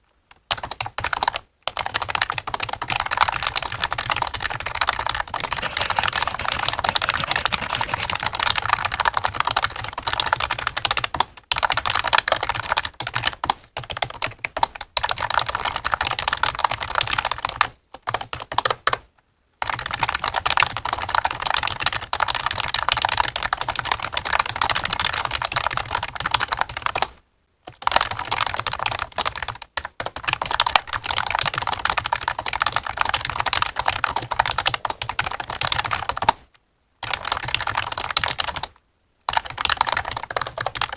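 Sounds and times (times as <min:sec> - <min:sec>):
fast typing on computer keyboard: 0:05.5 - 0:08.1.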